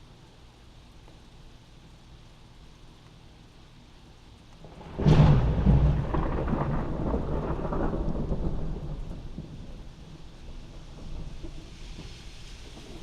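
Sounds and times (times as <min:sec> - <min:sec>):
steady rain: 0:00.0 - 0:13.0
thunderclap and rumble: 0:04.6 - 0:13.0.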